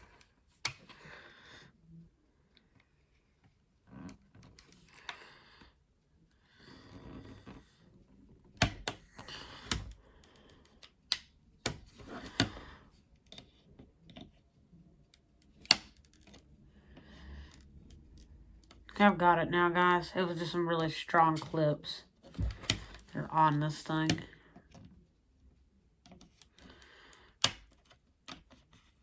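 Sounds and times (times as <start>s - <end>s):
plastic clips snapping: 15.5s - 16.4s, 27.4s - 28.4s.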